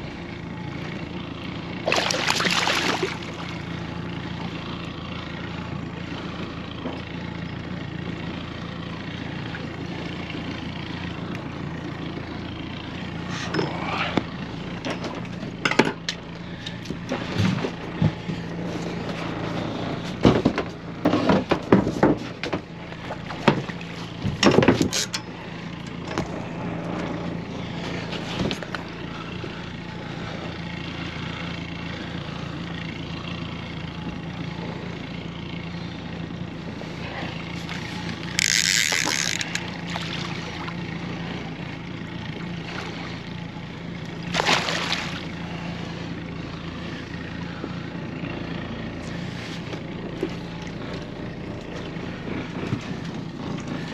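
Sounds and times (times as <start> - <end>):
small boat motor humming: 0.0 - 53.9
knocks and clatters: 20.1 - 22.7, 23.3 - 25.2.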